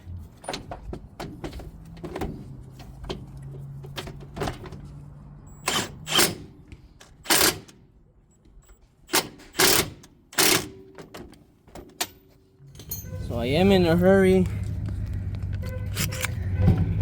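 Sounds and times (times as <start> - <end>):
power tool tightening bolts: 5.6 - 7.8, 9.1 - 10.9.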